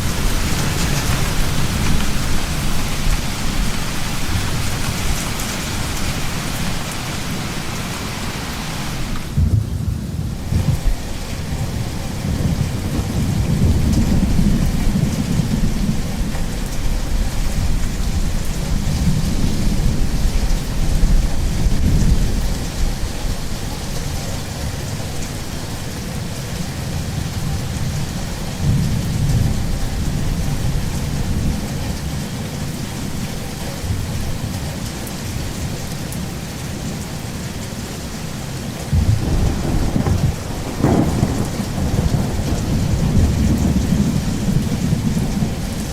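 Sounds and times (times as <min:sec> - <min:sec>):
thunder rumbling: 0:00.0 - 0:23.4, 0:38.9 - 0:45.9
heavy rain: 0:00.0 - 0:45.9
thunder crack: 0:09.3 - 0:16.0, 0:38.9 - 0:45.6.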